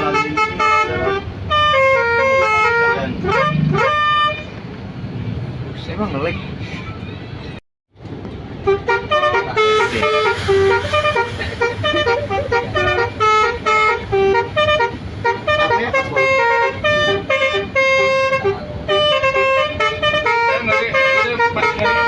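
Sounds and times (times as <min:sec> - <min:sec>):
multi-tone bus horn playing a tune: 0:00.0 - 0:04.6, 0:08.5 - 0:22.0.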